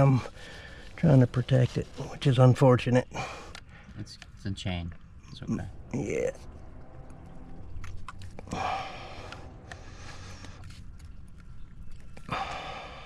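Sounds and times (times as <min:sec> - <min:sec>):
low background rumble: 0:00.0 - 0:13.0
person breathing out: 0:08.4 - 0:10.6.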